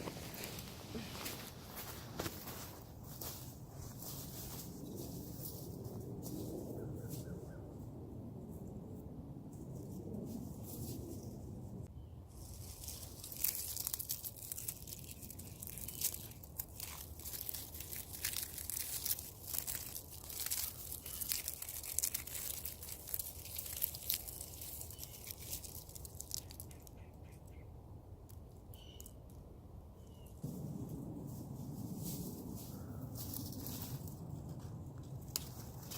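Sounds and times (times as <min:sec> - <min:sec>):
dry tinder crumpled and torn: 0:12.4 - 0:27.0.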